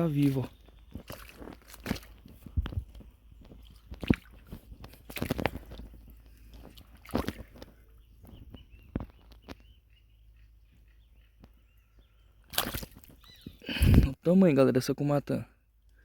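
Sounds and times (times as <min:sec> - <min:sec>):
squelches and splashes in mud: 0:00.0 - 0:09.6, 0:12.3 - 0:14.0.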